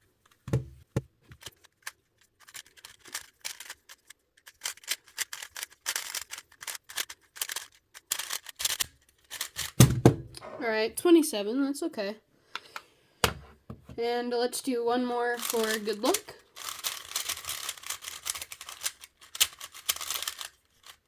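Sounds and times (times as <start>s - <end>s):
puzzle cube turning clatter: 1.3s - 9.9s, 15.4s - 21.0s.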